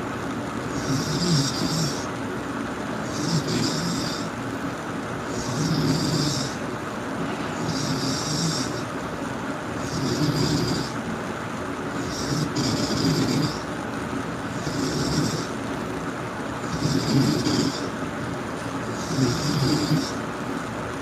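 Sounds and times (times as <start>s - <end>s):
person snoring: 0.7s - 2.1s, 3.0s - 4.4s, 5.3s - 6.6s, 7.6s - 8.9s, 9.8s - 11.0s, 12.0s - 13.7s, 14.5s - 15.6s, 16.6s - 17.9s, 18.8s - 20.2s.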